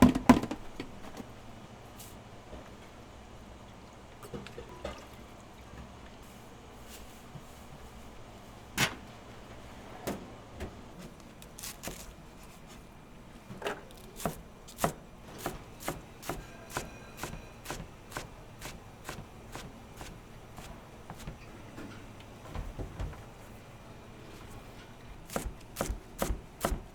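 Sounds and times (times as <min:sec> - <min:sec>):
knife chopping on cutting board: 0:11.6 - 0:12.1, 0:13.9 - 0:21.4, 0:25.3 - 0:26.9.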